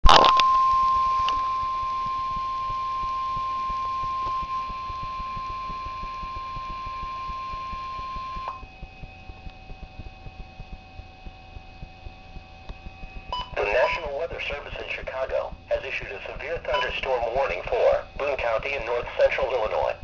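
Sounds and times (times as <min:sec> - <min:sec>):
weather radio alarm beep: 0:00.1 - 0:08.6, 0:13.3 - 0:20.0
soft regular ticks: 0:02.0 - 0:13.3.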